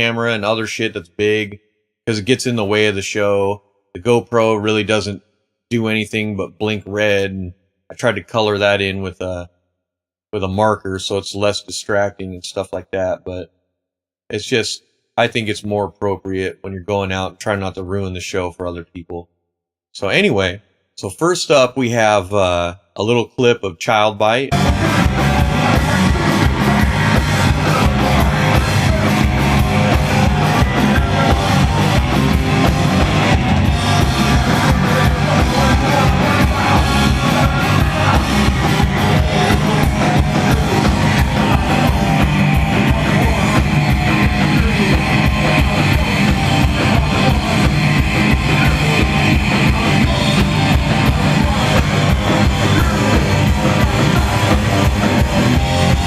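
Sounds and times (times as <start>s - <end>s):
fast kick drum pulse: 24.5s - 56.0s
live rock band playing: 24.5s - 56.0s.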